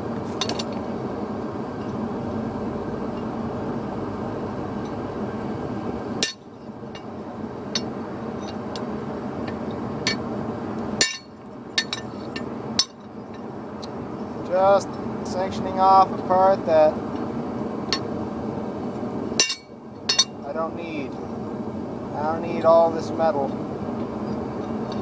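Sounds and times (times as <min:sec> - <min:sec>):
gas forge burner roaring: 0:00.0 - 0:25.0
hammer striking steel on anvil: 0:06.2 - 0:06.6, 0:11.0 - 0:12.1, 0:19.4 - 0:20.3.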